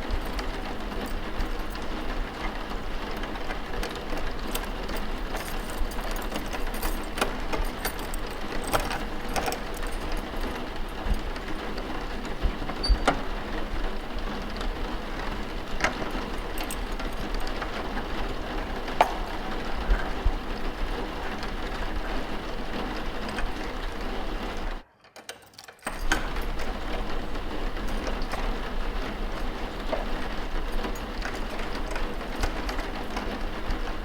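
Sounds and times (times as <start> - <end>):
steady rain: 0.0 - 24.8, 25.9 - 34.0
light clicks and knocks: 14.5 - 24.0.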